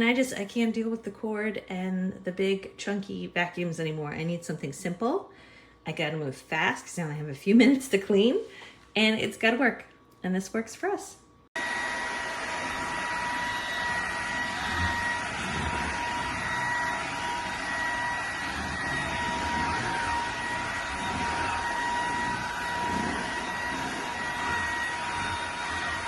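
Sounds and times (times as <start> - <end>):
vacuum cleaner motor whine: 11.6 - 26.0.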